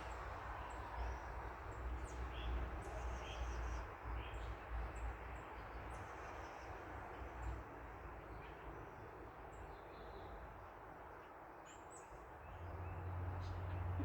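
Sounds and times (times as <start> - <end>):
passing car rumble: 12.6 - 14.0.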